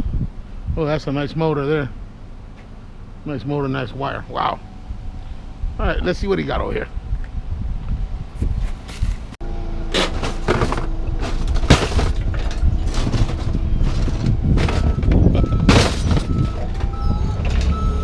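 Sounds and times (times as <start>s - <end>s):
engine running: 1.9s - 18.0s
reversing alarm beeping: 4.5s - 5.2s, 14.6s - 18.0s
scrap steel clanging: 9.9s - 16.7s.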